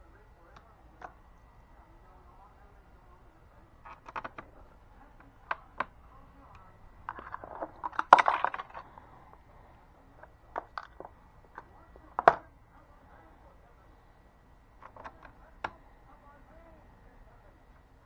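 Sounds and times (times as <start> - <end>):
small hard parts clicking: 3.8 - 12.5, 14.8 - 15.8.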